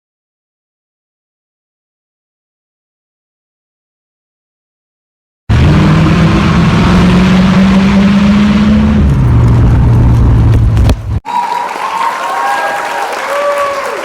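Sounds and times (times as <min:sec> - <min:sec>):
loud vehicle engine revving: 0:05.5 - 0:11.2.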